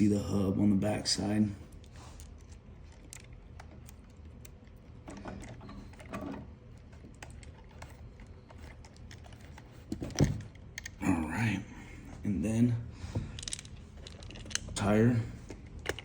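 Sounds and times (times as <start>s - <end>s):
low steady hum: 0.0s - 16.0s
small plastic parts clicking: 1.7s - 11.0s, 13.3s - 16.0s.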